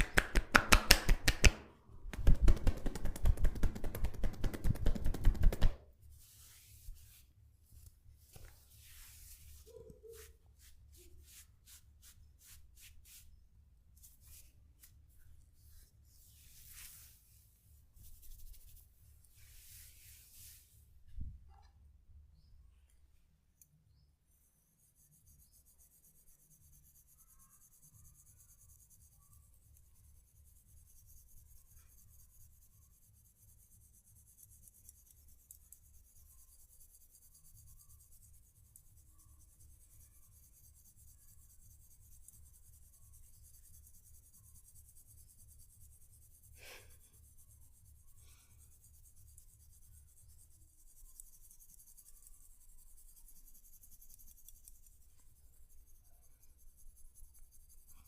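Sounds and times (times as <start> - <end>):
scratching and rubbing on hair: 0.0 - 20.9, 34.3 - 58.0.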